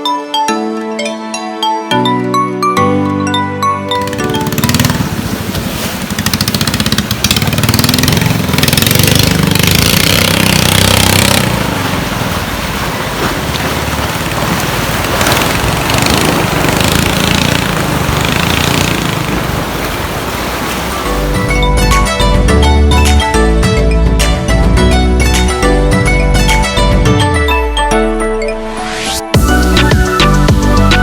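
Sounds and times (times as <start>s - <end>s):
small engine chugging: 3.9s - 21.9s.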